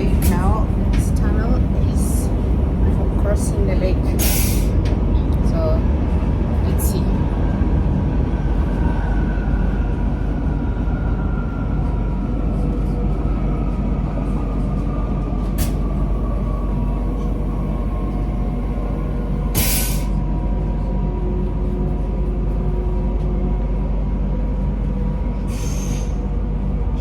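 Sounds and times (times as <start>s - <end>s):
train wheels rumbling on rails: 0.0s - 27.0s
loud hiss: 19.6s - 20.1s.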